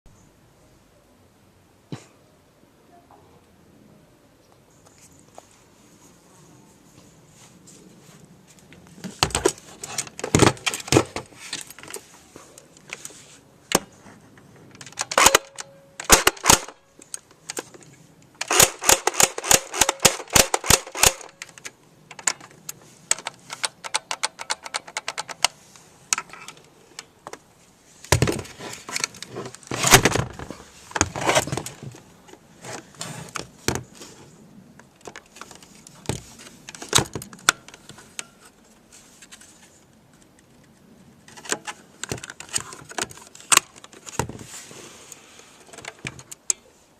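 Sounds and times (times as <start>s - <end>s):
gun handling clicks: 14.8s - 17.7s, 18.3s - 27.1s.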